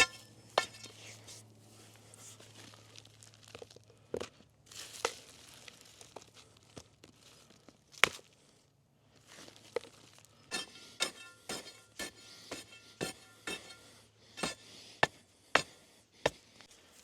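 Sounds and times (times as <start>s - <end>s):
metal tool striking concrete lumps: 0.0s - 1.0s, 10.5s - 16.5s.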